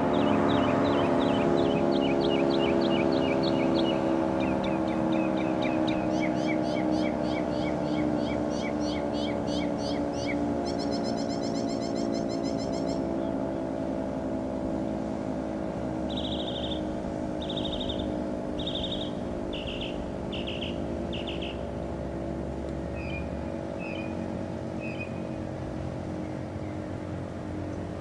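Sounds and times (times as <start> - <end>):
bird trilling and chirping: 0.0 - 13.4, 16.0 - 21.7, 22.9 - 25.4.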